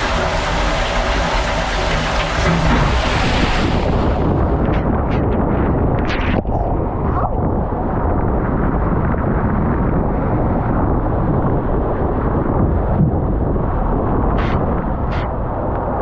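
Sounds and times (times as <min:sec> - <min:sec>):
water rushing: 0:00.0 - 0:05.2
air buffeting microphone: 0:00.0 - 0:16.0.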